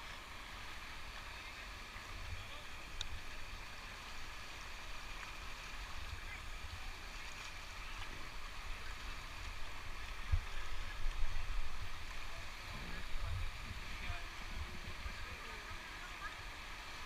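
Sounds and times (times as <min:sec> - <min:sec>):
river water rushing: 0:00.0 - 0:17.0
wind buffeting microphone: 0:12.7 - 0:15.5.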